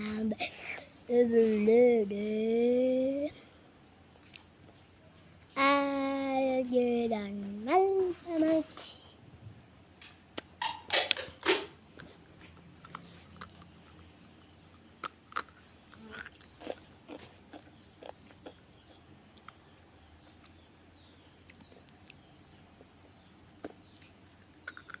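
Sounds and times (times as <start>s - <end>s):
chewing crunchy food: 14.7s - 20.6s.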